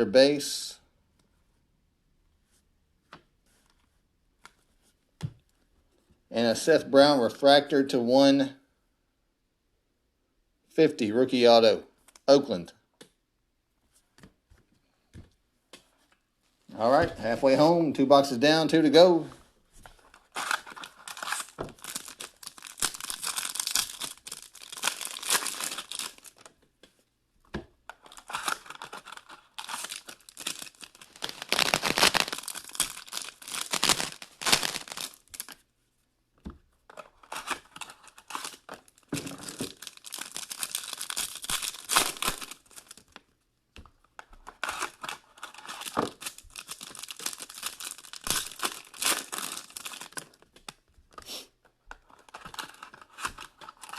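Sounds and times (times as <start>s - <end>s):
card packaging torn and crinkled: 20.1s - 26.5s, 28.0s - 35.6s, 37.0s - 43.2s, 44.5s - 50.8s, 52.1s - 53.9s.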